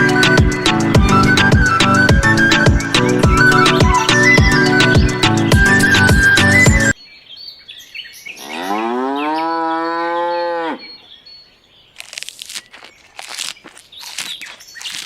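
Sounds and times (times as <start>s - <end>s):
background music: 0.0s - 7.0s
cow mooing: 8.4s - 11.0s.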